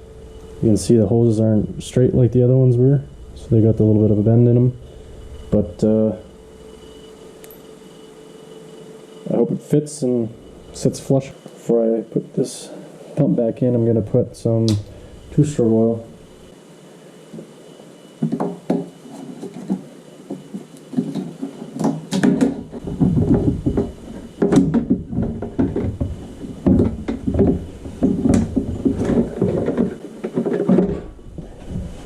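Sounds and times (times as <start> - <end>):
rattling and rustling: 19.1 - 32.0
clunks knocks and clicks: 21.0 - 31.9.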